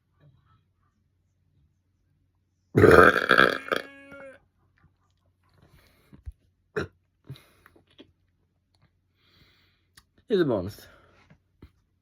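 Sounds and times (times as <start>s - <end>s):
loud deep belch: 2.8s - 3.9s, 6.8s - 7.0s.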